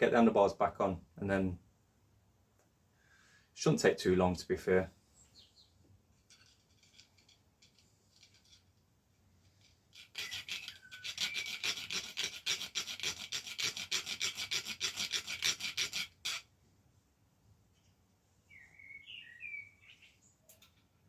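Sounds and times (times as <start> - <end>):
hand file rasping on metal: 9.9 - 16.5.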